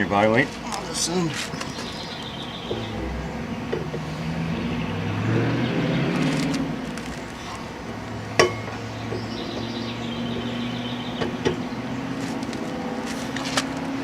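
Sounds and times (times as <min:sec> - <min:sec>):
low steady hum: 0:01.6 - 0:06.9.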